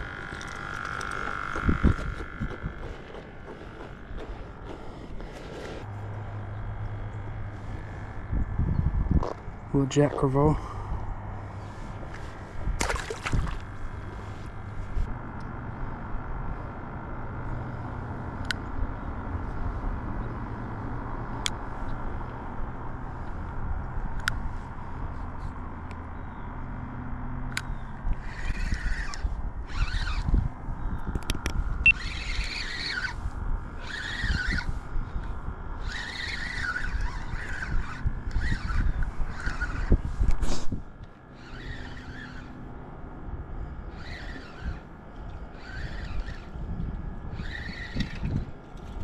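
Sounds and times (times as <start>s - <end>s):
road traffic rumble: 0.0s - 49.0s.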